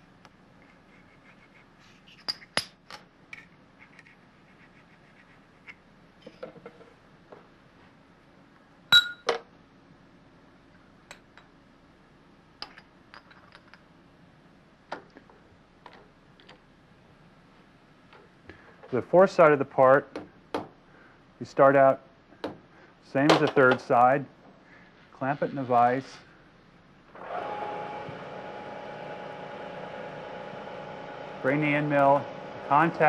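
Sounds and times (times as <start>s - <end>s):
metal clinks and knocks: 12.6s - 13.9s.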